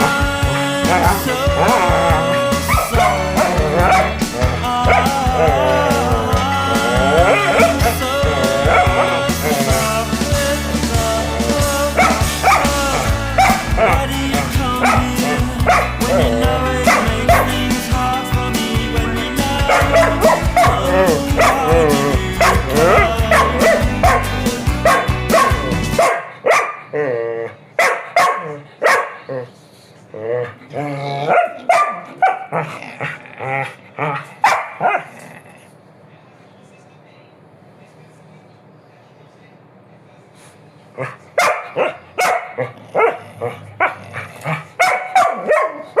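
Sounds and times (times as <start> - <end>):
background music with beat: 0.0 - 26.0
dog barking: 0.9 - 5.2, 7.1 - 9.6, 12.0 - 14.0, 14.8 - 17.6, 19.7 - 27.0, 27.8 - 29.3, 31.3 - 32.8, 34.4 - 35.1, 41.0 - 46.0.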